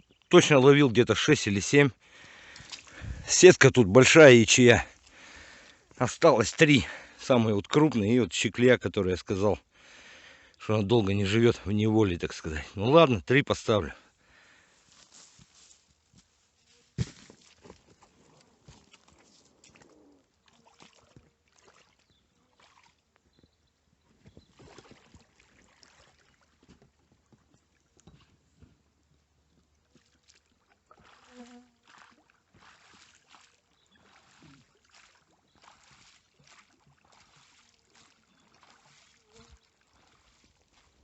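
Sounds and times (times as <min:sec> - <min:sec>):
water splashing around boat: 0:17.2 - 0:23.2, 0:24.4 - 0:28.7, 0:29.6 - 0:41.0.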